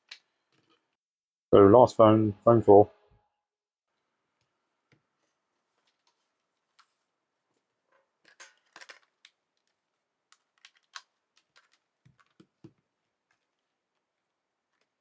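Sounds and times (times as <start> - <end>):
small parts clicking and rattling: 7.9 - 13.6.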